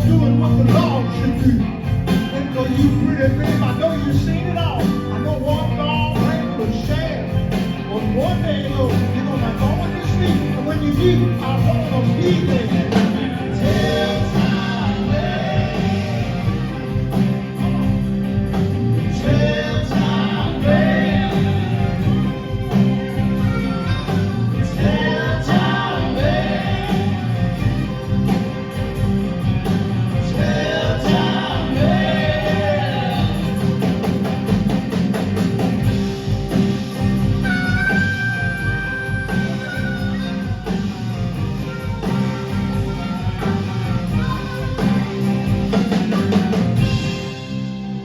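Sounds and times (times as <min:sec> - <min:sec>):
bending lead melody line: 0:00.0 - 0:48.0
live rock band playing: 0:00.0 - 0:48.0.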